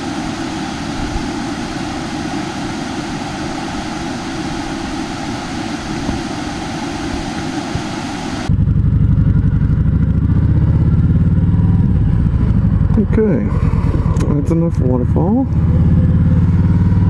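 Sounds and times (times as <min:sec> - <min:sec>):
small waterfall rushing: 0:00.0 - 0:08.5
motorcycle engine running: 0:00.0 - 0:17.0.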